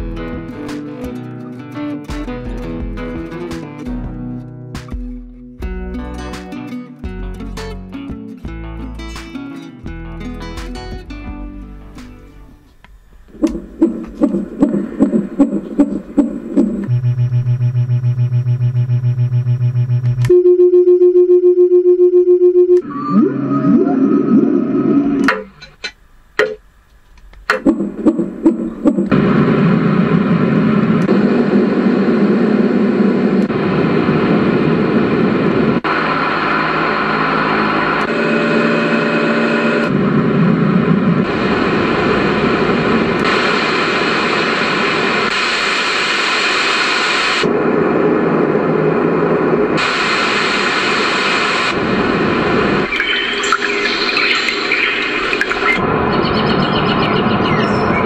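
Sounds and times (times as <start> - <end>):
white noise machine rushing: 12.9 - 20.3, 27.5 - 58.0.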